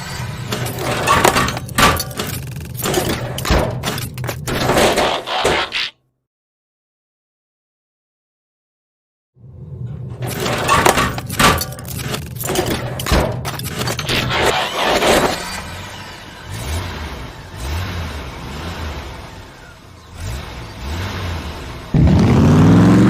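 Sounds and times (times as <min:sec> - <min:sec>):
metallic clanks and scrapes: 0:00.1 - 0:05.9, 0:09.8 - 0:15.9
mechanical whirring: 0:10.2 - 0:16.5.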